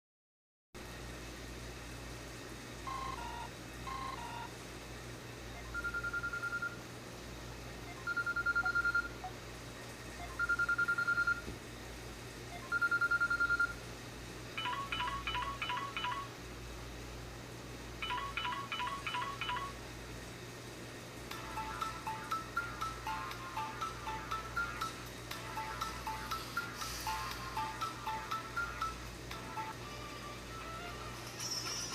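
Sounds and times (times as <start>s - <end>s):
phone ringtone beeps: 2.9s - 4.5s, 5.7s - 6.8s, 7.9s - 9.3s, 10.2s - 11.4s, 12.5s - 13.8s, 14.6s - 16.3s, 18.0s - 19.8s, 21.4s - 30.0s.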